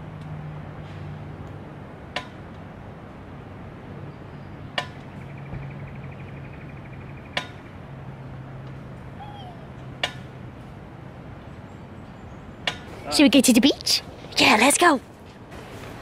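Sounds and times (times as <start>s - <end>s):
faint bird trill: 9.2s - 9.9s.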